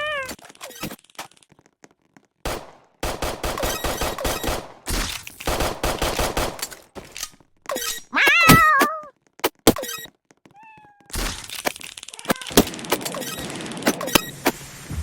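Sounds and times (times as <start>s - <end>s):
cat meowing: 0.0s - 0.4s, 8.1s - 9.1s, 10.5s - 11.1s, 12.1s - 12.7s.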